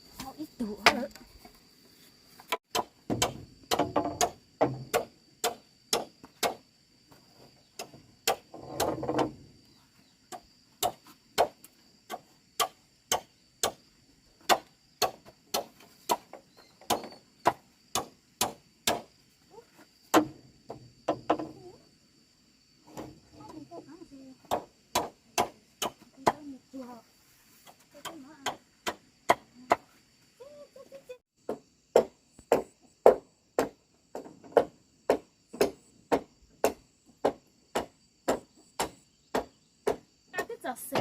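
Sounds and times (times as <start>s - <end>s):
high buzz of insects: 0.0s - 41.0s
hammer striking wood: 24.5s - 26.0s.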